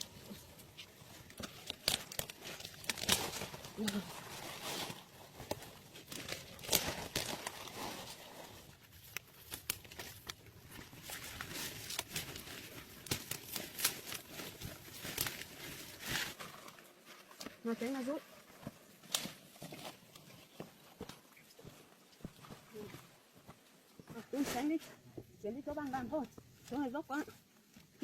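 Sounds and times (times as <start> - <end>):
foliage rustling: 0.0 - 22.9
leaf stems snapping: 1.3 - 7.7, 11.0 - 16.4.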